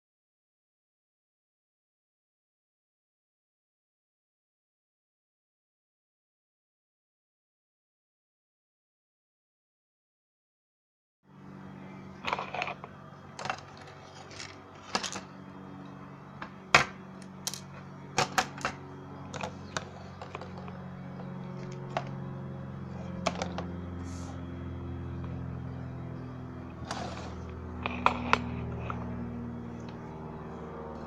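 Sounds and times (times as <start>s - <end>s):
low electrical hum: 11.3s - 31.0s.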